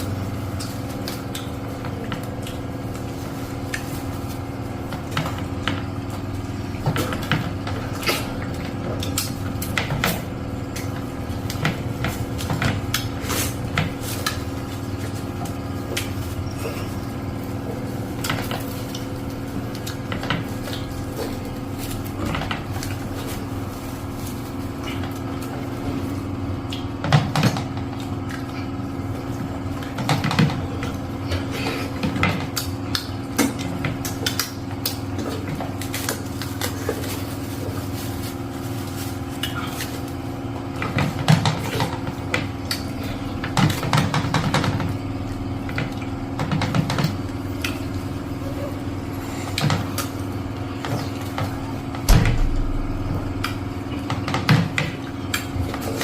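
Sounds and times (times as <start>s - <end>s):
low hum: 52.0s - 55.5s
thump: 52.1s - 53.5s.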